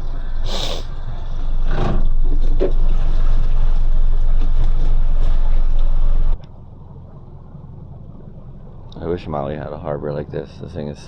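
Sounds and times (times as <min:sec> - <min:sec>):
motorboat engine rumble: 0:00.0 - 0:11.0
wind: 0:00.0 - 0:11.0
water noise: 0:01.8 - 0:10.7.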